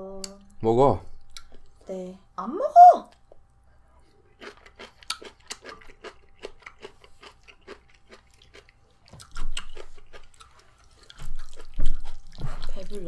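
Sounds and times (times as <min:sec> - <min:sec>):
crunchy food being chewed: 0:04.2 - 0:13.0.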